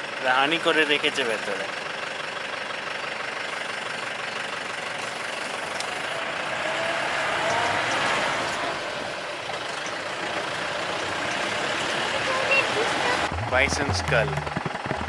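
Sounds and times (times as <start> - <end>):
vehicle engine running: 13.3 - 15.0.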